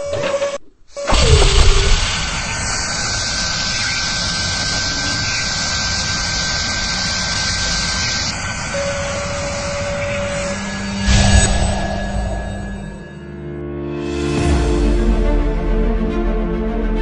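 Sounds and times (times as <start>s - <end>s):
cnc router hiss and whine: 0.0s - 13.1s.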